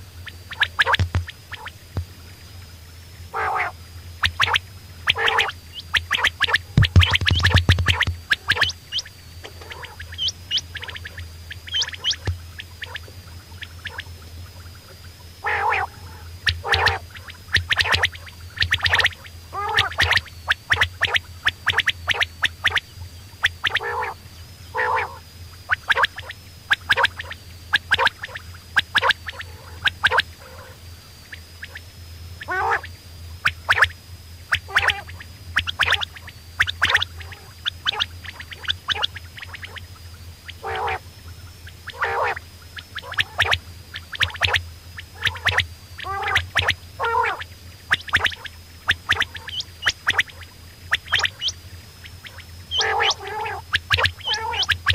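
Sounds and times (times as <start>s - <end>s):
low hum: 0.0s - 54.9s
quail calling: 3.3s - 14.1s, 15.4s - 22.8s, 23.6s - 25.2s, 32.4s - 32.8s, 34.6s - 39.8s, 40.5s - 41.1s, 41.7s - 54.9s.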